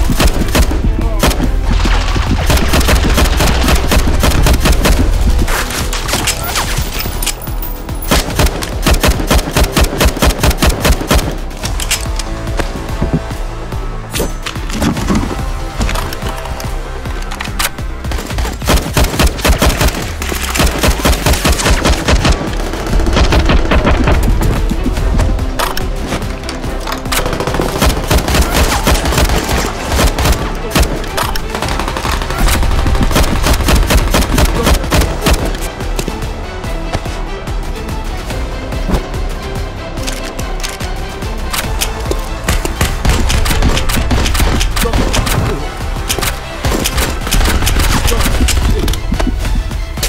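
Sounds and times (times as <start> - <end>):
rapid gunfire: 0.0 - 6.2, 8.1 - 11.5, 18.0 - 24.4, 27.2 - 35.6, 42.5 - 45.4, 46.2 - 48.8
background music: 0.0 - 50.0.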